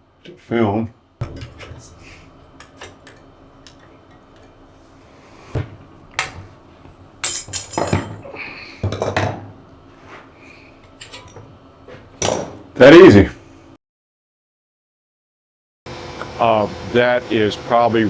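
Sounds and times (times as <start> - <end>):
metal clinks and clanks: 1.2 - 4.6, 7.2 - 8.4, 10.8 - 11.5.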